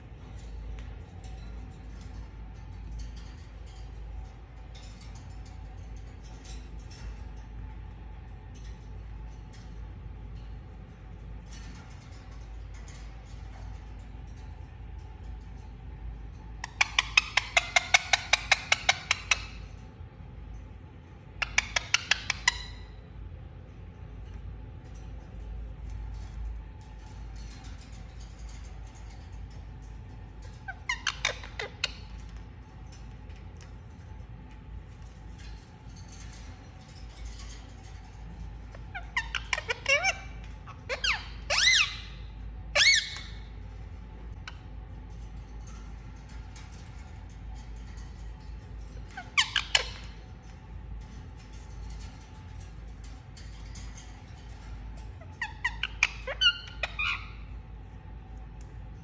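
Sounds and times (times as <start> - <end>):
parrot chirping and calling: 16.6 - 19.7, 21.4 - 23.0, 27.0 - 33.8, 35.0 - 44.7, 45.7 - 57.7.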